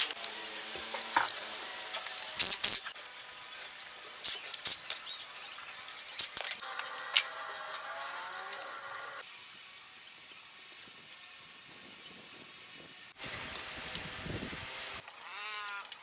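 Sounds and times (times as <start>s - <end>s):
clicks and scrapes on metal parts: 0.0s - 5.1s, 5.8s - 9.2s, 15.0s - 16.0s
short squeak: 4.3s - 6.6s.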